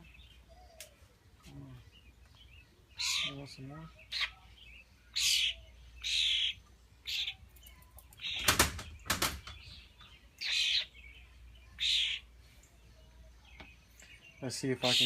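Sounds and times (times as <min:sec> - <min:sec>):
fledgling starlings begging calls: 0:02.8 - 0:12.3, 0:14.0 - 0:15.0.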